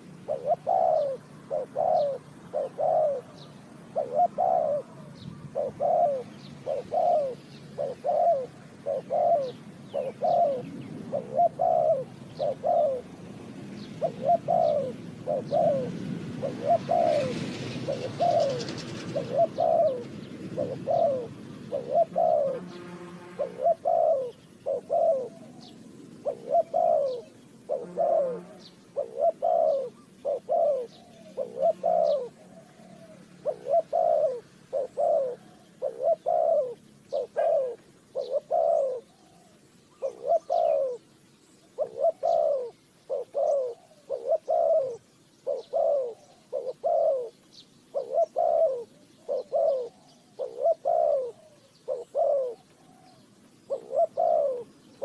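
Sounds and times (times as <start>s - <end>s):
dove cooing: 0.0s - 55.0s
faint small bird chirps: 23.5s - 55.0s.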